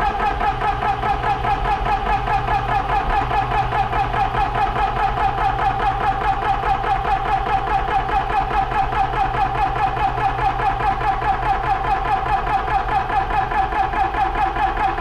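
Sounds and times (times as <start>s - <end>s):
air compressor pulsing: 0.0s - 15.0s.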